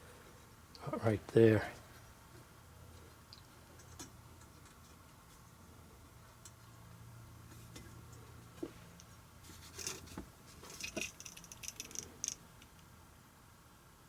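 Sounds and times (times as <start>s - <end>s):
hands handling metal mount: 9.0s - 12.8s.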